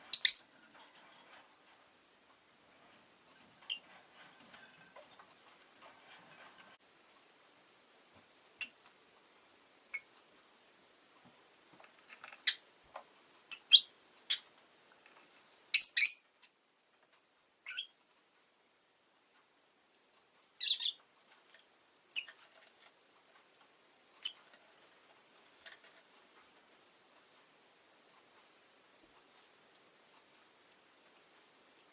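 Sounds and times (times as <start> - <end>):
lovebird chirping: 0.0 - 0.6, 13.5 - 14.5, 15.7 - 16.3, 17.6 - 18.0, 20.6 - 21.0.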